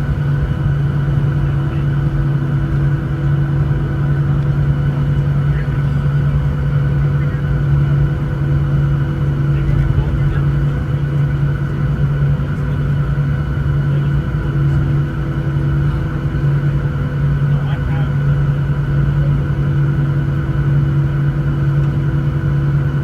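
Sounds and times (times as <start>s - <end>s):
aircraft cabin engine drone: 0.0s - 23.0s.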